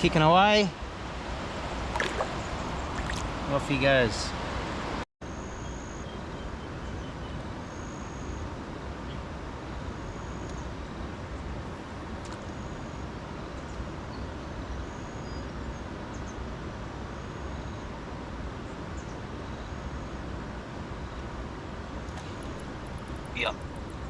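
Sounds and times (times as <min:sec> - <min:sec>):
steady rushing outdoor noise: 0:00.0 - 0:05.0, 0:15.5 - 0:24.0.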